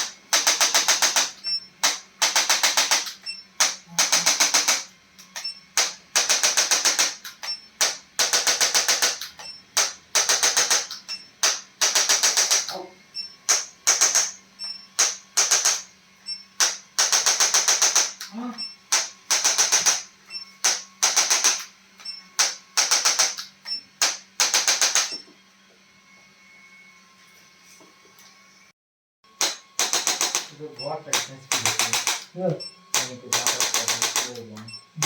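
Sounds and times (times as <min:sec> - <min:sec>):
sharp clicks: 0:18.9 - 0:25.2, 0:29.4 - 0:30.5, 0:31.1 - 0:32.3, 0:32.9 - 0:34.8
rapid mechanical ticking: 0:31.1 - 0:32.3, 0:32.9 - 0:34.8.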